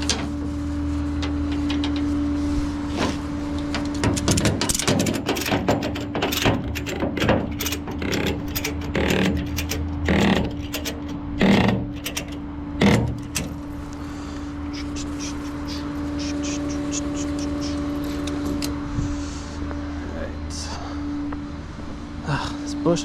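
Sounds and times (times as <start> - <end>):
metallic clicks and clanks: 0.0 - 0.3, 1.1 - 2.2, 3.6 - 14.0
truck engine and hydraulics humming: 0.0 - 23.0.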